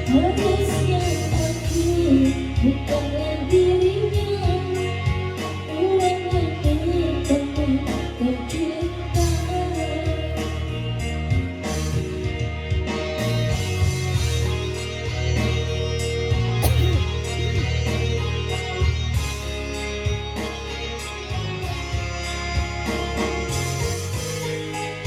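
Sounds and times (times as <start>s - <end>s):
woman singing: 0.0s - 10.8s
backing music with steady beat: 0.0s - 25.0s.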